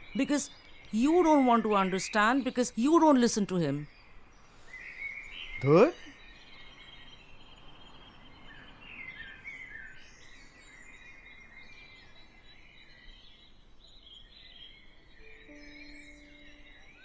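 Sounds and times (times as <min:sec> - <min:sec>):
birds chirping: 0:00.0 - 0:03.8, 0:14.5 - 0:17.0
low background hiss: 0:00.0 - 0:04.0, 0:05.6 - 0:06.8, 0:11.6 - 0:17.0.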